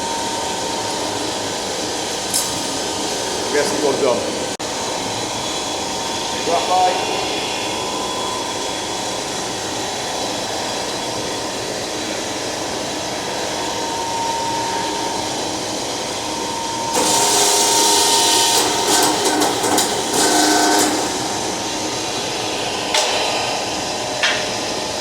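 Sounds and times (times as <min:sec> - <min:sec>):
forging press humming: 0:13.7 - 0:25.0
loud hiss: 0:17.0 - 0:24.8.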